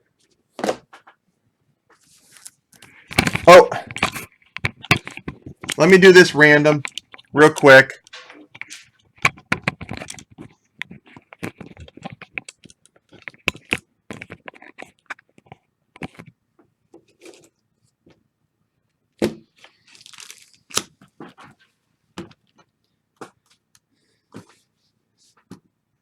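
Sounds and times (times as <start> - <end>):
plastic or paper crinkling: 2.0 - 15.2, 19.6 - 21.6
objects clicking on a desk: 2.8 - 6.0, 6.8 - 16.4.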